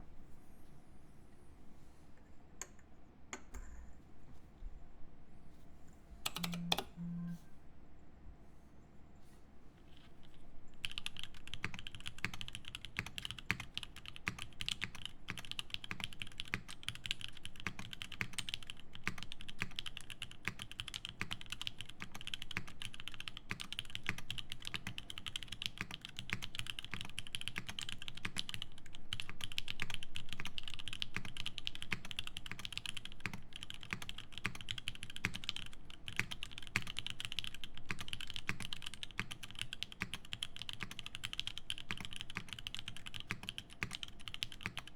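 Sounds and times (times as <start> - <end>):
mechanical keyboard typing: 6.2 - 7.3, 10.8 - 44.9.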